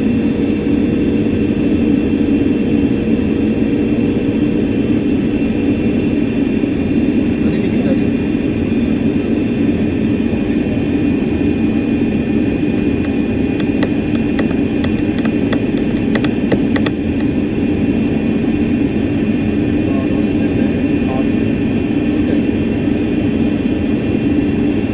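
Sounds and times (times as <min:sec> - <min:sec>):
airliner cabin engine drone: 0:00.0 - 0:24.9.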